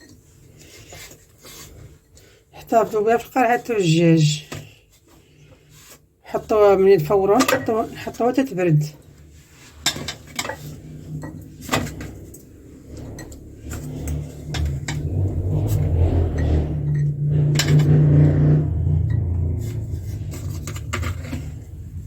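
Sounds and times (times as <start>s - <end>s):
low rumble: 10.3s - 22.0s.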